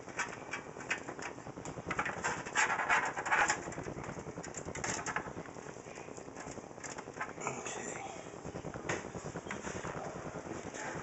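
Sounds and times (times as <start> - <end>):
cables scraping and rustling: 0.0 - 11.0.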